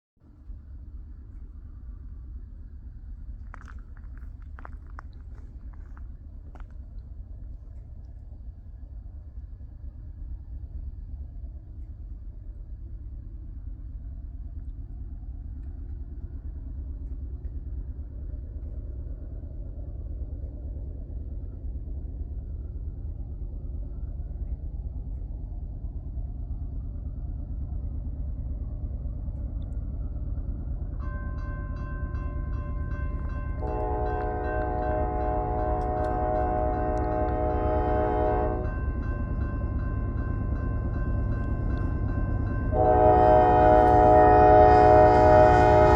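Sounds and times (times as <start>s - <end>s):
diesel locomotive rumble: 0.2s - 45.9s
multi-chime air horn chord: 33.4s - 39.3s, 42.7s - 45.9s.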